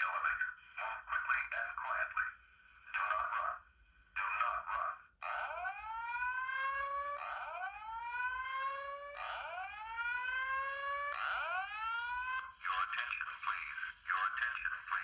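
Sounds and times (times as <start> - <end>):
fire alarm horn blast: 5.2 - 12.5
rising whoop alarm tone: 5.2 - 12.5.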